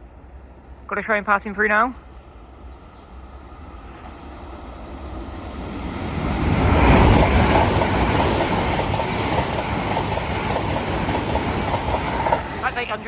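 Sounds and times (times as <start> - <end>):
diesel train passing: 0.0 - 13.0
wheels clacking over rail joints: 5.9 - 13.0.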